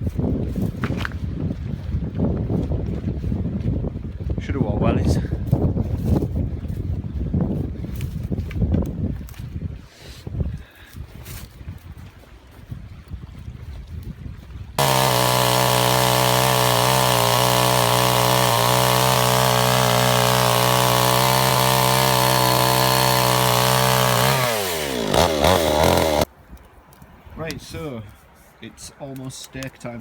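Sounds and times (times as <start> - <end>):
chainsaw running at high revs: 14.8 - 26.3.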